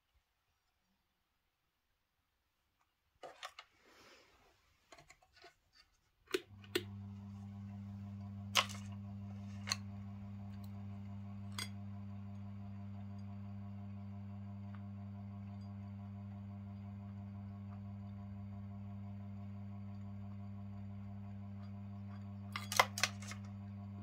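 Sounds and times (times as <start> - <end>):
ceiling fan motor hum: 6.5 - 24.0.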